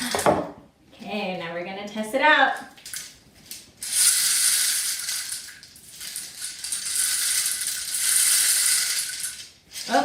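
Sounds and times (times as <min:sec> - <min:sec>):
rain stick rattling: 0:02.8 - 0:10.0.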